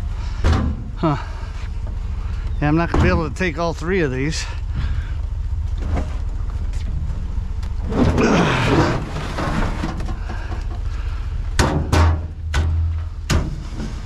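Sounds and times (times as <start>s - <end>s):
steady low rumble: 0.0s - 14.0s
scraping dragging noise: 5.6s - 10.3s
sharp knocks: 11.6s - 13.6s.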